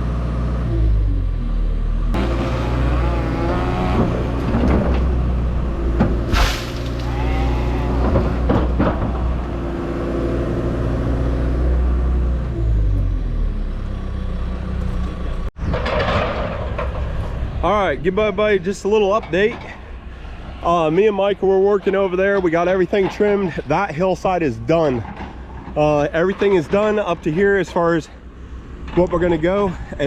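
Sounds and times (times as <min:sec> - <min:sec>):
short hiss: 0:06.3 - 0:07.2.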